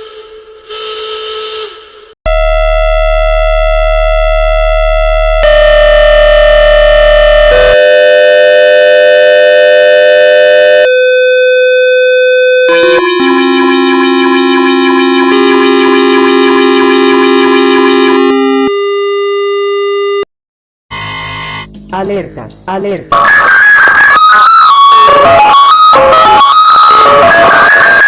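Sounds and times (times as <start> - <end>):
synthesized alert tones: 12.7 - 18.7.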